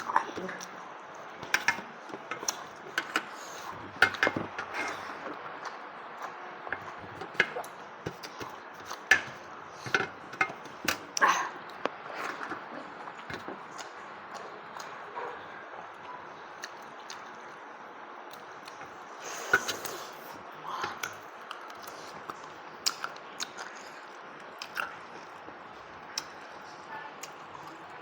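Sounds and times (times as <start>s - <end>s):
person chewing and crunching: 20.9s - 28.0s.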